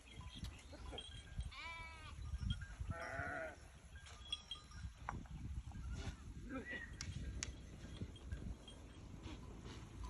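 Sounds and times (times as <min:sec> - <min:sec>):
sheep and goats bleating: 0:00.9 - 0:03.7.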